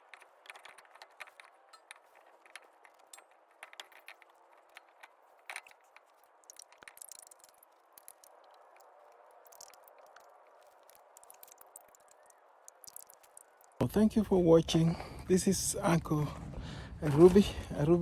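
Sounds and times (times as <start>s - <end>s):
faint clicks: 0.0s - 13.8s.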